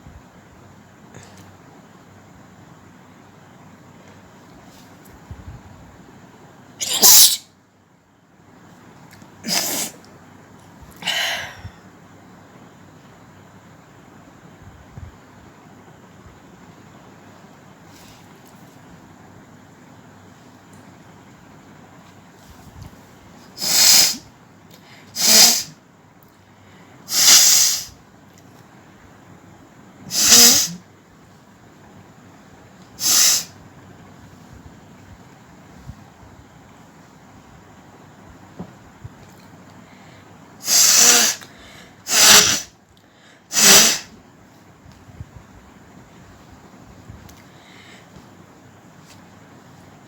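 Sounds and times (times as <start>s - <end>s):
woman sneezing: 6.8s - 7.4s, 9.4s - 10.0s, 23.6s - 24.2s, 25.2s - 25.7s, 27.1s - 27.9s, 30.1s - 30.8s, 33.0s - 33.5s, 40.6s - 41.4s, 42.1s - 42.7s, 43.5s - 44.1s.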